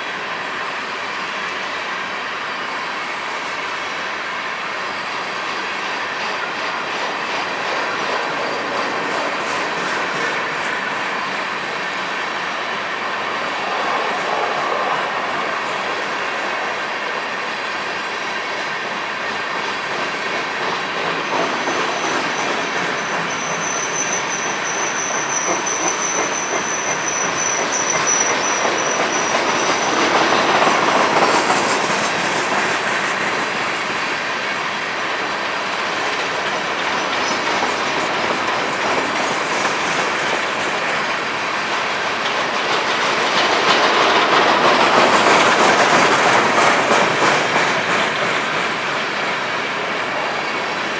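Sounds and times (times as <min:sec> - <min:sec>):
steel wheels rolling on rails: 0:04.9 - 0:12.7, 0:17.8 - 0:50.9
high wheel squeal: 0:19.8 - 0:35.0.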